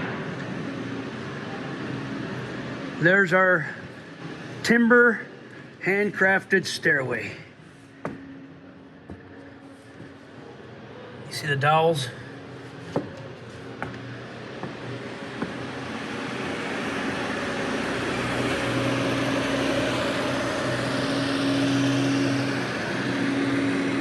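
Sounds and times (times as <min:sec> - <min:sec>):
vehicle engine running: 0:07.1 - 0:24.0.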